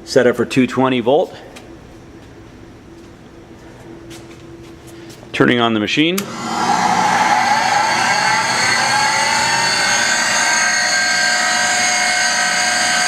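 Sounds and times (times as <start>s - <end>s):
grinder motor whining: 6.2s - 13.0s.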